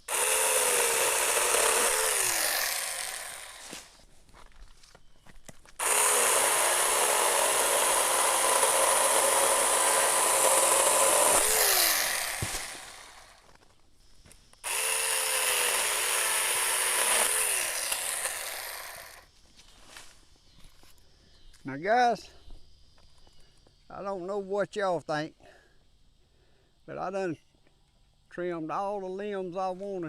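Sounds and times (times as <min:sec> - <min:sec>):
mini chainsaw cutting limbs: 0:00.0 - 0:04.0, 0:05.8 - 0:13.4, 0:14.6 - 0:19.3.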